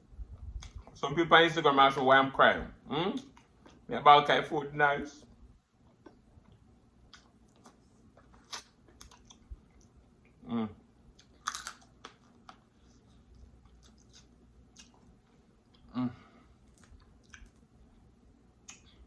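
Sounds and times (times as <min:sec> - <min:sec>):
wet chewing: 0:05.8 - 0:10.0, 0:11.1 - 0:15.9, 0:16.6 - 0:17.7.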